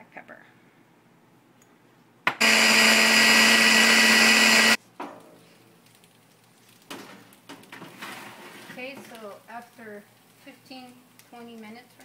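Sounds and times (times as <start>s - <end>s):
food processor motor whining: 2.3s - 4.8s.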